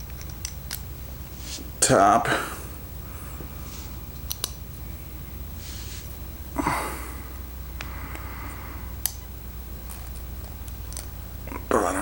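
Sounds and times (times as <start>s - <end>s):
steady low hum: 0.0s - 12.0s
small sharp clicks: 4.2s - 4.6s.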